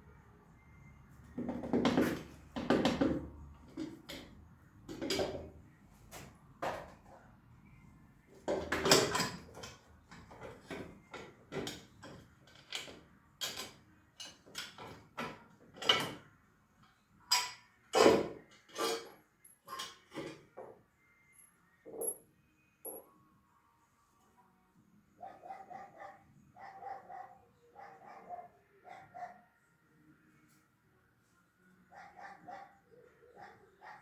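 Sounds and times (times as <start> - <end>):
hand tools clicking and knocking: 1.4 - 7.2, 8.3 - 16.3, 17.3 - 20.7.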